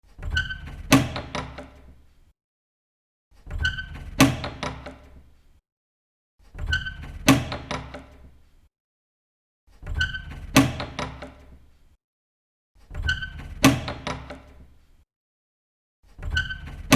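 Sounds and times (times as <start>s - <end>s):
door handle and latch clicking: 10.3s - 11.4s.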